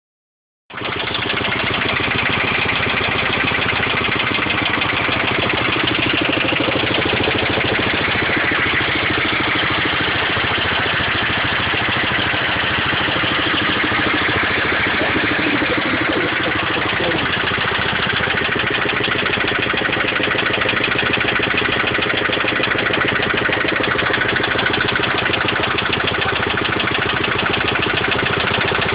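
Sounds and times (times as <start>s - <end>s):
car engine idling: 0.7s - 28.9s
engine knock: 0.7s - 28.9s.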